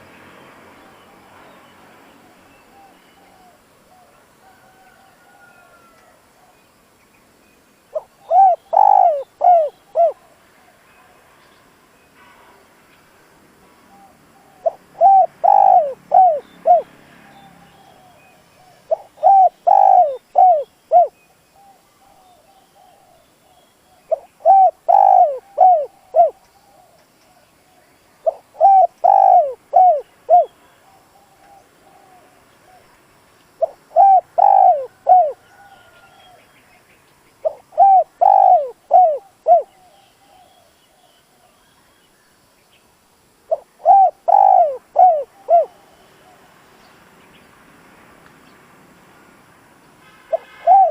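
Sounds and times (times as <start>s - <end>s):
dove cooing: 7.9s - 10.4s, 13.9s - 23.2s, 23.9s - 27.4s, 28.2s - 32.9s, 33.6s - 36.4s, 37.4s - 40.6s, 43.5s - 46.5s, 50.3s - 50.9s
faint bird chirps: 50.1s - 50.9s.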